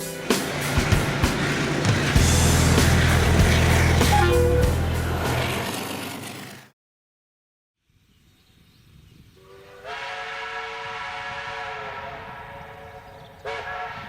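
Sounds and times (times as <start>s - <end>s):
steam hissing: 0.0s - 4.5s
steam locomotive chime whistle: 3.8s - 5.0s, 9.4s - 14.0s.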